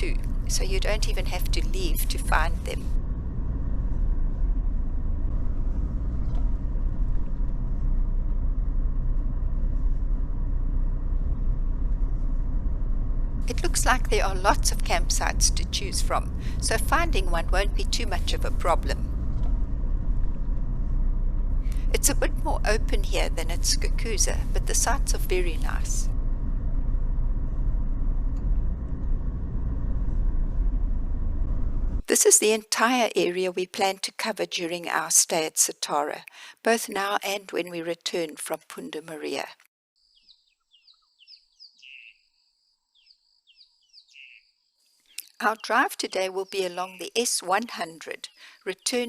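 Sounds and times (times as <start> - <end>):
car driving low rumble: 0.0 - 32.1.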